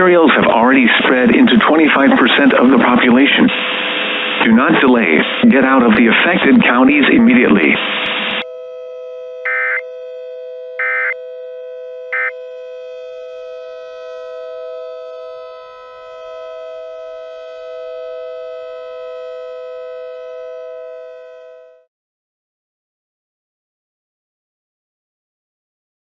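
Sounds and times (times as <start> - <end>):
two-tone electronic drone: 0.0 - 21.9
short bright data bursts: 9.5 - 9.8.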